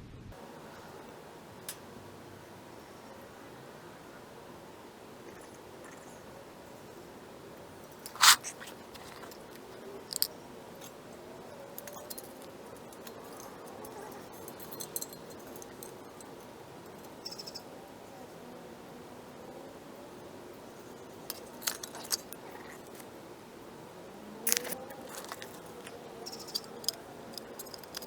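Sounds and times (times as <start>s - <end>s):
metallic clicks of hand tools: 8.0s - 11.0s, 24.5s - 28.0s.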